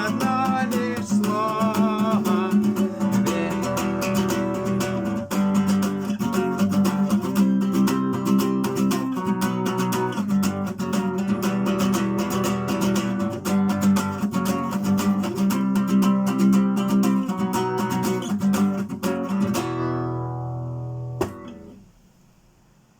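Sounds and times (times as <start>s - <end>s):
acoustic guitar strumming: 0.0s - 21.8s.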